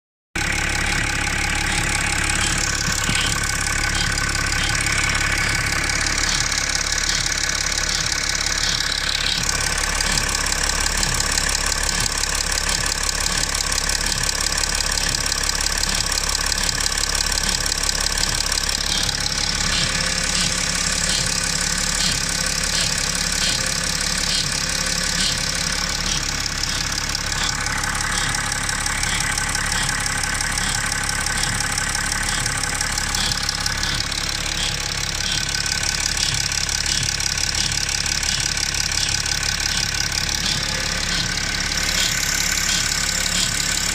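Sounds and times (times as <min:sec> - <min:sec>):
car engine idling: 0:00.4 - 0:43.9
quack-like engine chirp: 0:01.6 - 0:07.3, 0:39.0 - 0:43.9.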